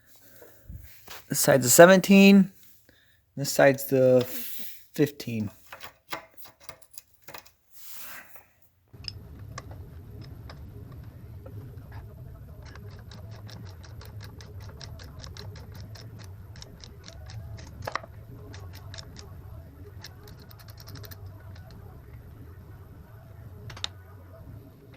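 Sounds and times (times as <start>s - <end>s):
steady low hum: 9.0s - 24.9s.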